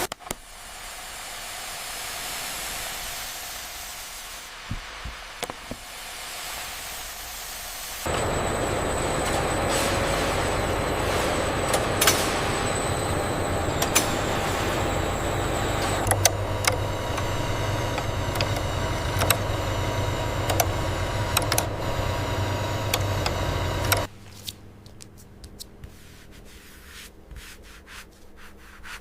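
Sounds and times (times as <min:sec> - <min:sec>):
machinery hum and hiss: 0:00.0 - 0:24.3
steady machine tones: 0:08.1 - 0:24.1
sharp clicks and clacks: 0:11.7 - 0:24.1.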